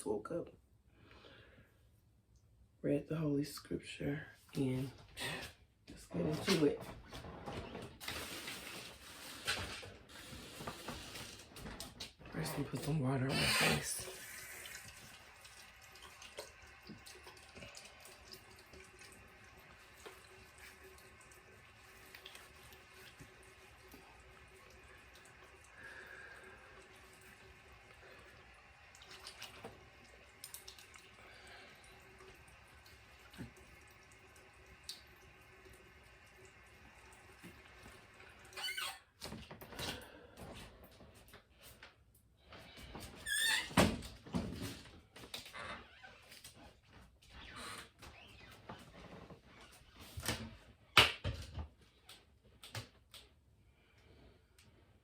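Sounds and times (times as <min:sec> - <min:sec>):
water dripping and splashing: 0:13.6 - 0:38.7.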